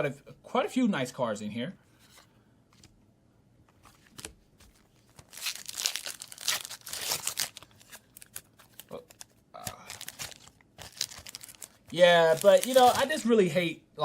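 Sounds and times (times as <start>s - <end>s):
foil wrapper tearing and crinkling: 5.1s - 13.2s.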